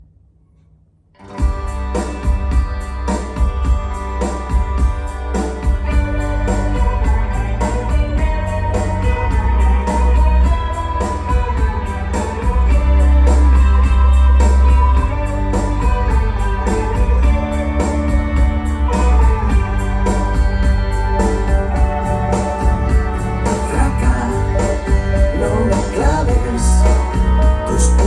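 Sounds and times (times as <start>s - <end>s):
instrumental rock music: 1.2s - 28.0s.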